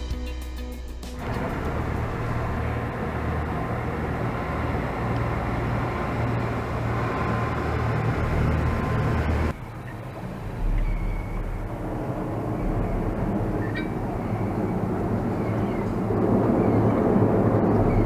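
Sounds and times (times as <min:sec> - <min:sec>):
rushing noise: 0:00.0 - 0:09.5
engine running: 0:00.0 - 0:09.6.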